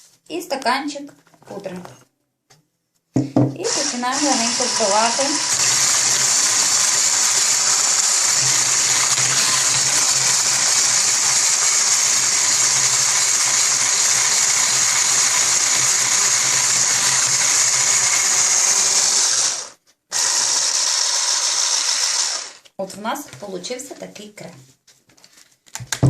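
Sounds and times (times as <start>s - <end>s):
electric mixer whirring: 3.6s - 22.6s.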